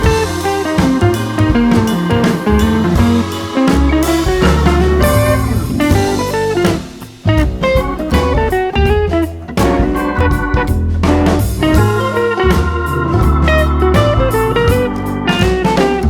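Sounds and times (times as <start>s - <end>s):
blues music with guitar and drums: 0.0s - 16.0s.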